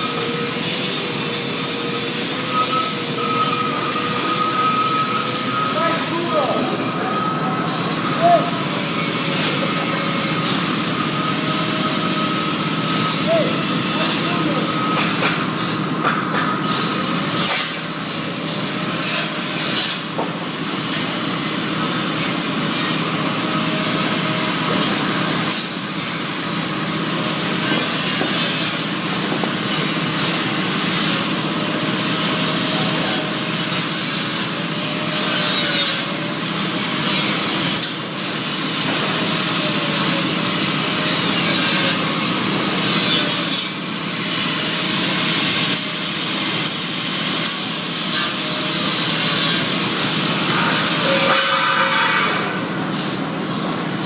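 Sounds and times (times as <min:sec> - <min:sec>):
welding arc hissing and crackling: 0:16.7 - 0:54.0.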